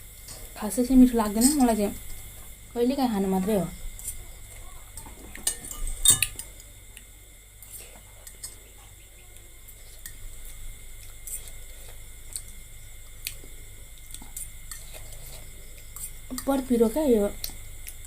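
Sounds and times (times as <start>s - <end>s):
metal utensils clinking on a bowl: 5.0s - 6.5s.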